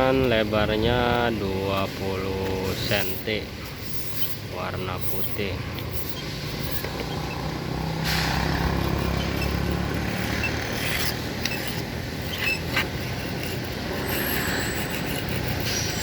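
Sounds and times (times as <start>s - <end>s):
road-marking machine engine hum: 0.0s - 16.0s
hiss: 7.9s - 8.9s.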